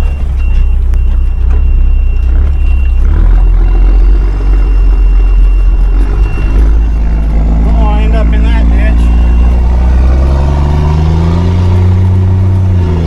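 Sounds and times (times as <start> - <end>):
knocks and rattles: 0.0 - 7.8
truck diesel engine rumble: 0.0 - 13.0.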